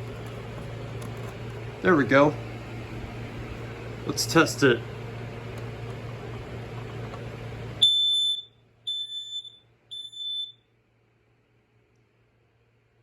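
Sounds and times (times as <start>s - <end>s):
smoke alarm beeps: 7.8s - 10.7s.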